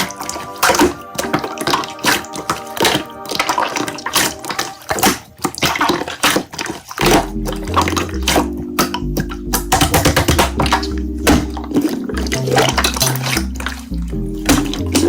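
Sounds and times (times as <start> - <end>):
background music: 0.0 - 6.4, 7.0 - 15.0
slime squelching: 0.0 - 15.0
low bass line: 7.0 - 15.0.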